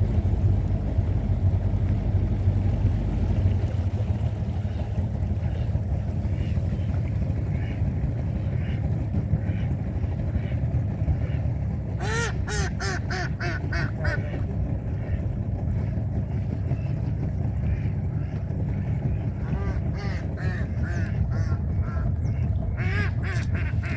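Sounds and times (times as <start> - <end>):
boat motor rumble: 0.0 - 23.9
duck quacking: 22.8 - 23.9.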